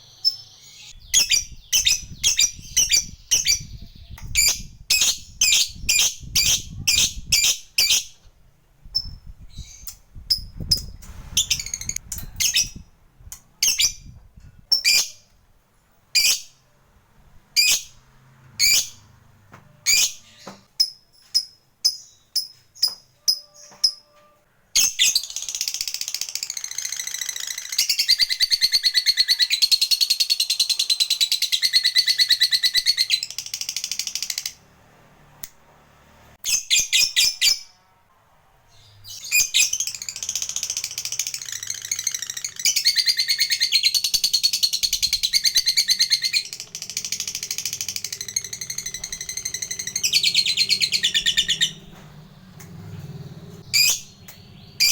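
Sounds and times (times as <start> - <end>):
bird rapid chattering trill: 25.0 - 34.6, 39.3 - 51.9
bird sharp chirps: 38.8 - 54.9.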